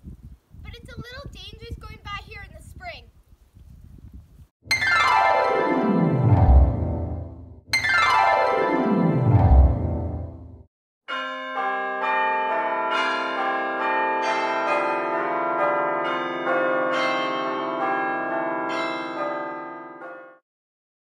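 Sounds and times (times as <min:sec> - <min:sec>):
bell-like chimes ringing: 0:04.7 - 0:07.1.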